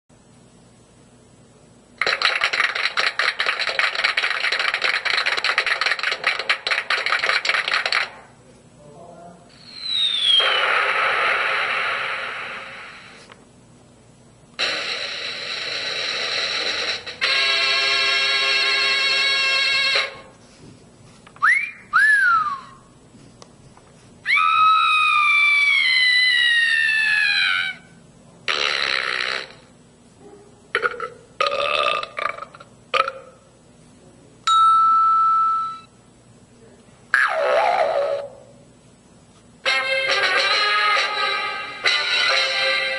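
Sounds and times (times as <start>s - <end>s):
electronic hissing effect: 9.5s - 13.3s
buzzy electronic tones: 9.6s - 13.3s, 14.6s - 19.0s
recorded burp effect: 28.5s - 29.7s, 30.7s - 33.5s.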